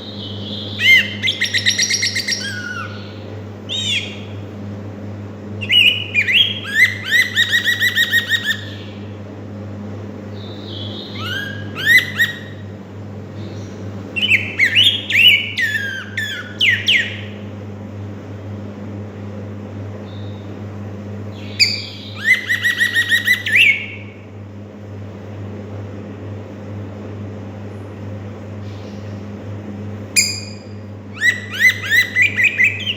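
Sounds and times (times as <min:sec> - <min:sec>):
bird whistled song: 0:00.0 - 0:04.4, 0:05.6 - 0:09.0, 0:10.3 - 0:12.7, 0:13.4 - 0:17.4, 0:21.3 - 0:24.2, 0:30.2 - 0:32.9
steady low hum: 0:00.0 - 0:32.9.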